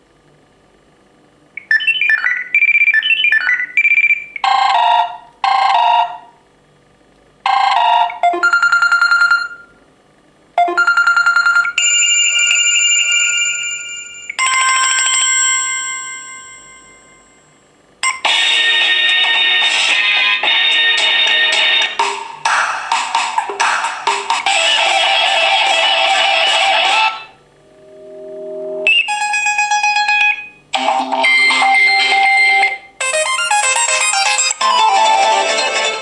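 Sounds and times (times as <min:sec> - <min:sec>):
electronic ringtone melodies: 0:07.5 - 0:09.6, 0:24.5 - 0:36.0
ringing tone: 0:27.3 - 0:30.6.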